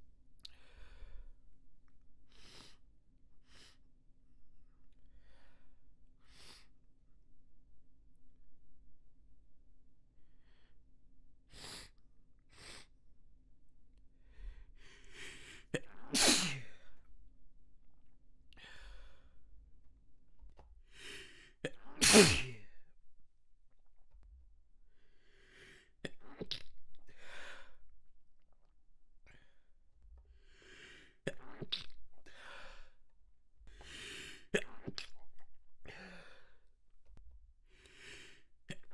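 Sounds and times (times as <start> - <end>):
breathy breaths: 14.2 - 15.7, 30.3 - 31.2, 33.7 - 34.5, 37.7 - 38.5
person sneezing: 15.8 - 16.7, 21.9 - 22.6.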